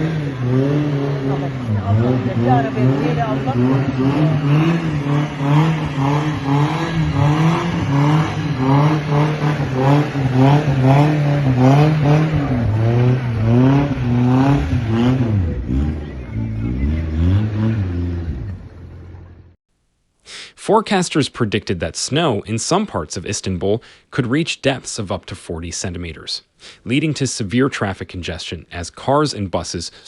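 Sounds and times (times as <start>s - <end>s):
car engine at high revs: 0.0s - 19.6s.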